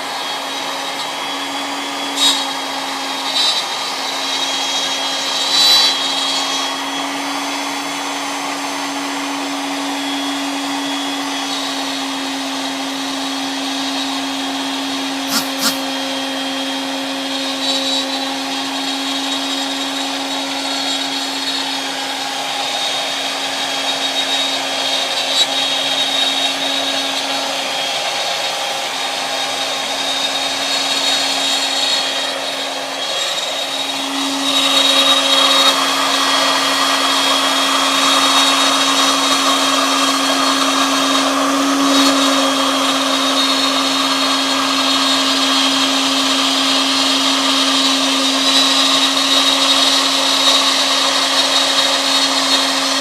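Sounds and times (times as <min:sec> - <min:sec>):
router spindle whine: 0:00.0 - 0:53.0
rushing cutting noise: 0:15.1 - 0:16.7.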